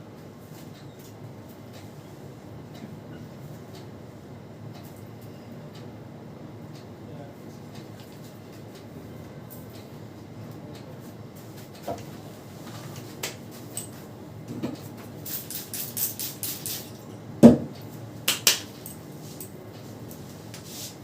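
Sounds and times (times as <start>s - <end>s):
hands tapping and slapping: 18.3s - 18.7s.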